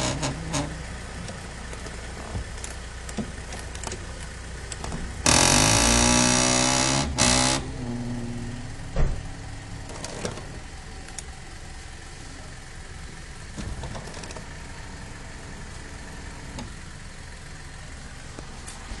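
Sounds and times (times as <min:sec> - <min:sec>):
power seat motor humming: 0:00.0 - 0:11.5
seat gearbox clicking: 0:13.6 - 0:14.5.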